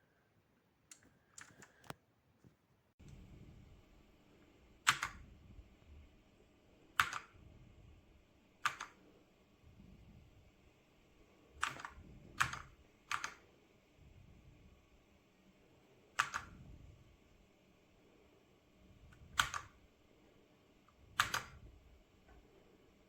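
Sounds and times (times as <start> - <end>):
mechanical keyboard keystrokes: 0.9 - 2.0, 4.8 - 5.2, 6.9 - 7.4, 8.6 - 9.0, 11.6 - 13.5, 16.1 - 16.6, 19.1 - 19.8, 21.1 - 21.6.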